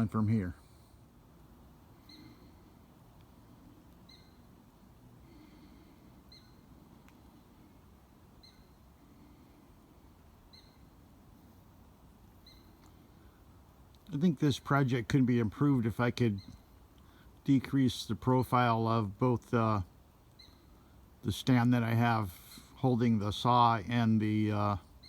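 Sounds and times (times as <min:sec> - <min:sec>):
bird chirping: 0:02.0 - 0:02.6, 0:04.0 - 0:04.6, 0:05.3 - 0:06.8, 0:08.4 - 0:09.4, 0:10.5 - 0:11.0, 0:12.4 - 0:13.0, 0:16.2 - 0:16.8, 0:19.7 - 0:20.8.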